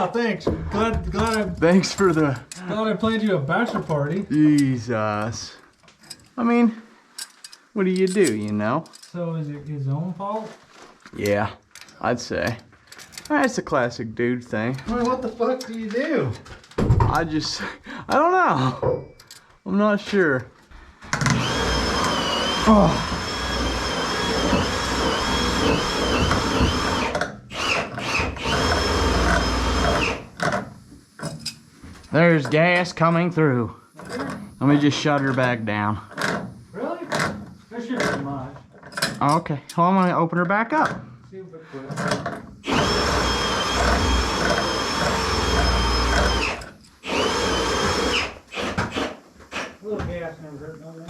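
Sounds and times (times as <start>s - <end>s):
power tool motor whining: 21.2s - 30.4s, 42.6s - 49.7s.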